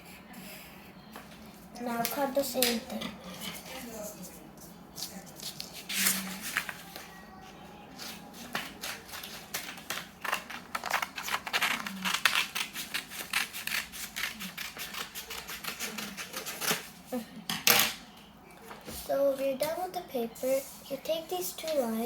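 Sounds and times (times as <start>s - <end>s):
scissors snipping paper: 8.0s - 16.9s.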